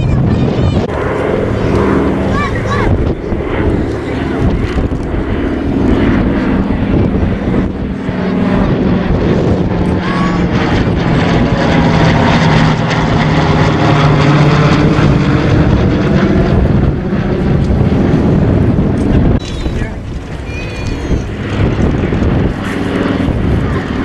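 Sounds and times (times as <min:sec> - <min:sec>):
propeller engines droning: 0:00.0 - 0:24.0.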